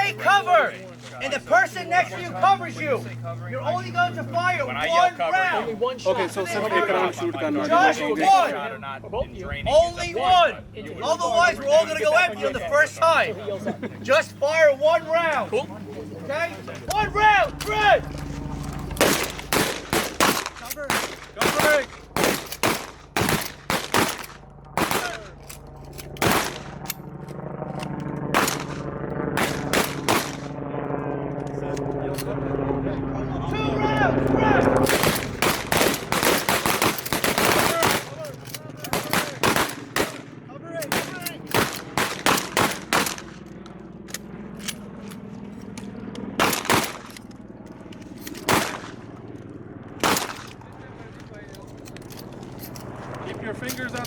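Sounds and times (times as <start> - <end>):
shotguns firing: 16.9 - 27.0, 28.3 - 30.6, 34.8 - 43.5, 46.4 - 47.2, 48.3 - 49.1, 50.0 - 50.6.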